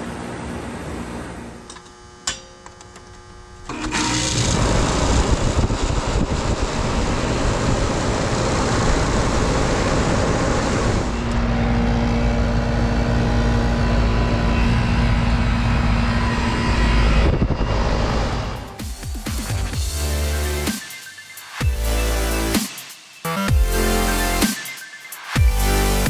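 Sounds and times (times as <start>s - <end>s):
air conditioner fan noise: 0.0s - 20.7s
low hum: 4.4s - 20.7s.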